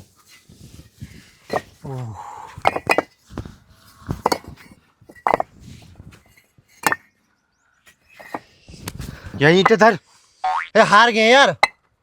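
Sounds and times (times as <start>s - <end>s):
bricks clinking and knocking: 1.4s - 1.8s, 2.6s - 5.6s, 6.2s - 7.1s, 8.2s - 8.5s.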